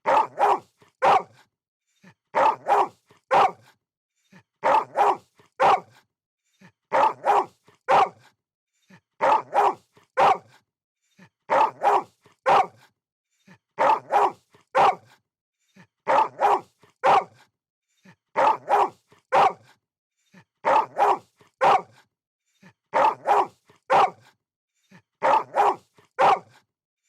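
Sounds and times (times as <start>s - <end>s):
dog barking: 0.0s - 1.4s, 2.3s - 3.8s, 4.6s - 6.0s, 6.9s - 8.3s, 9.2s - 10.6s, 11.5s - 12.9s, 13.8s - 15.2s, 16.1s - 17.5s, 18.4s - 19.8s, 20.6s - 22.1s, 22.9s - 24.4s, 25.2s - 26.6s.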